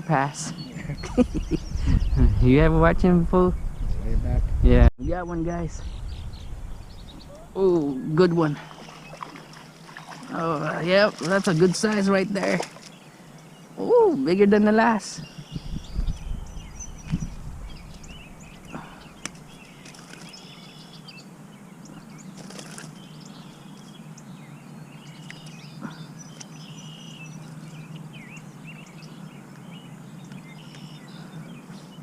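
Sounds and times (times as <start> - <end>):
birds chirping: 0.0 - 32.0
steady low hum: 0.0 - 32.0.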